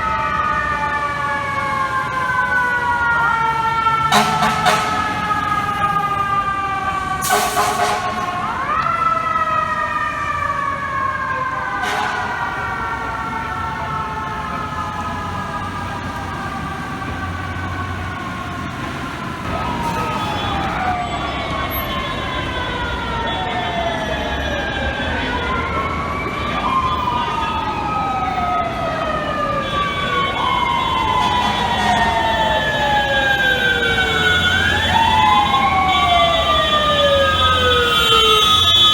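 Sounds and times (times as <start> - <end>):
fire truck sirens wailing: 0.0 - 38.9.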